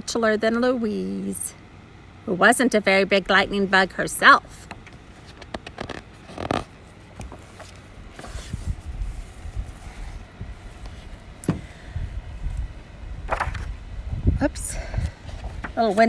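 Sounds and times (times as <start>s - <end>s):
wind buffeting microphone: 8.3s - 10.7s, 11.6s - 15.8s.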